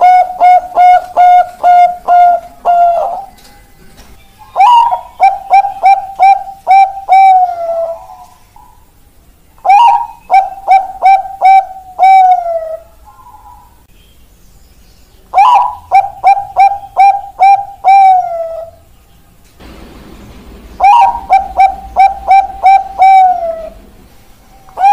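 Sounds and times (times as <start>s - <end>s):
dove cooing: 0.0s - 3.5s, 4.4s - 8.9s, 9.6s - 13.8s, 15.3s - 18.9s, 20.7s - 24.0s, 24.6s - 24.9s.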